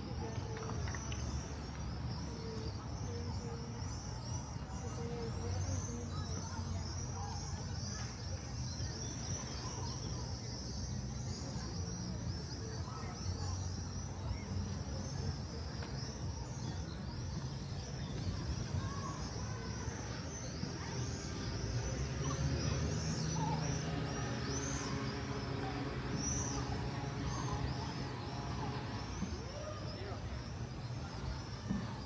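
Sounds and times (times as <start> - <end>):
cicadas buzzing: 0.2 - 32.0
low outdoor rumble: 10.2 - 32.0.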